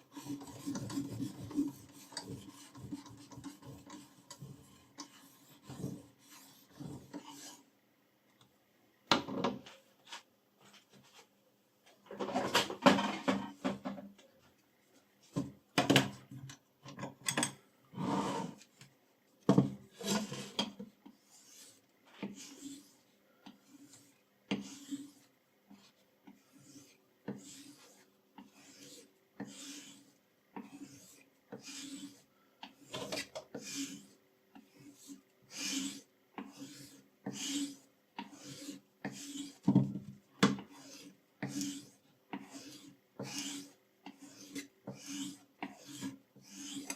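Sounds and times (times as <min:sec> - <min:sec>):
knife scraping sharpening stone: 0:40.7 - 0:46.9.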